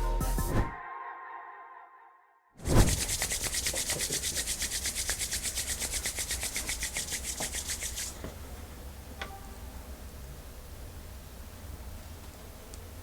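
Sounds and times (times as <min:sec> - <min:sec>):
hands rubbing quickly: 0:02.6 - 0:08.2.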